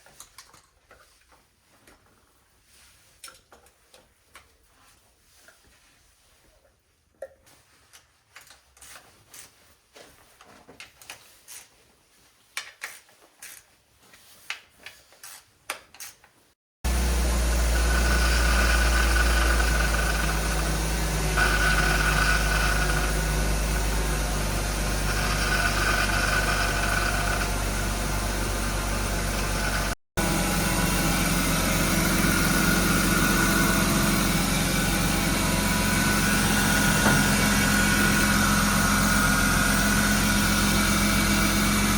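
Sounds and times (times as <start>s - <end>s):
car engine idling: 16.9s - 41.9s.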